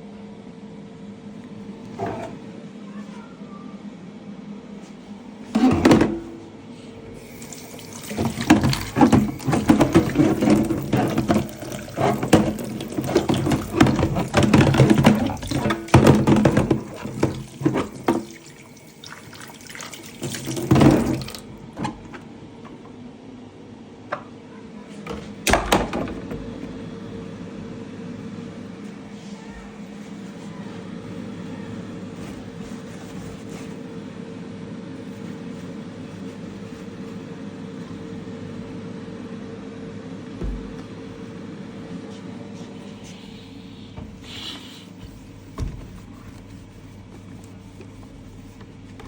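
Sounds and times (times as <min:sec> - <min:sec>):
tap water splashing: 0:07.4 - 0:21.9.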